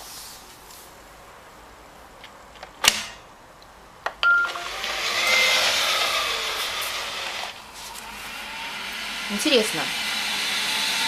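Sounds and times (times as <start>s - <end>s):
short beep: 4.2s - 4.6s
vacuum suction motor and brush: 4.5s - 11.0s.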